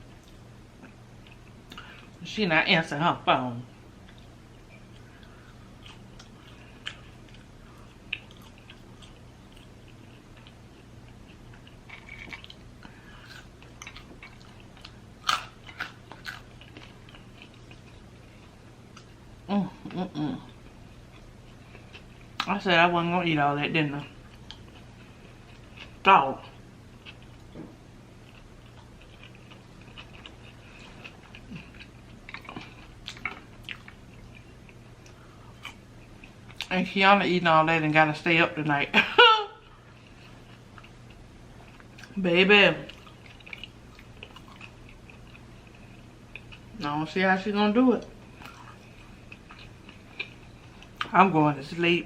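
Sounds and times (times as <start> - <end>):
faint low hum: 0.0 - 52.0
person chewing food: 0.1 - 2.2, 4.0 - 19.2, 20.4 - 22.5, 24.2 - 36.7, 39.6 - 42.2, 42.9 - 46.8, 48.0 - 51.1.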